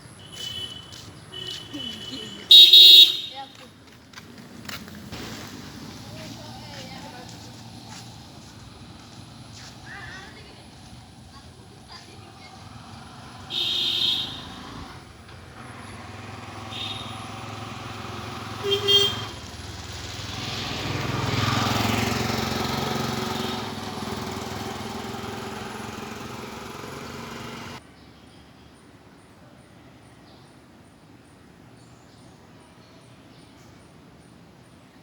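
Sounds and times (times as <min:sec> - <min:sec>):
vehicle horn toots: 0:00.2 - 0:03.5, 0:13.5 - 0:14.8, 0:16.5 - 0:19.5, 0:22.8 - 0:27.8
motor vehicle passing: 0:00.9 - 0:27.8.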